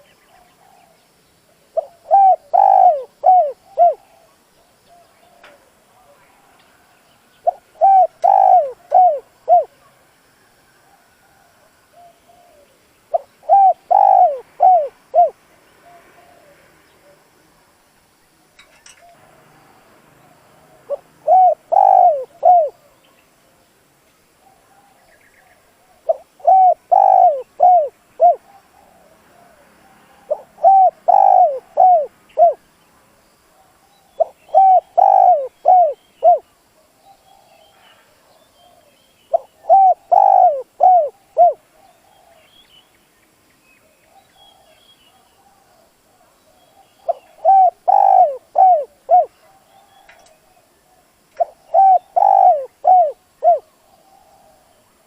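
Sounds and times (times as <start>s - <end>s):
dove cooing: 1.7s - 6.6s, 7.4s - 9.8s, 10.8s - 17.2s, 20.7s - 23.0s, 25.8s - 32.6s, 34.2s - 36.5s, 37.1s - 42.4s, 44.5s - 49.8s, 50.5s - 54.8s.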